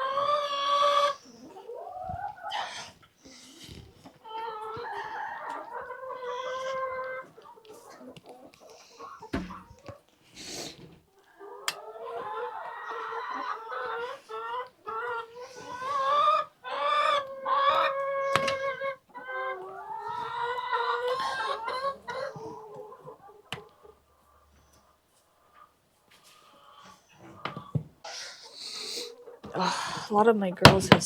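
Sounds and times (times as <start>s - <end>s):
hens clucking and calling: 0.0s - 31.0s.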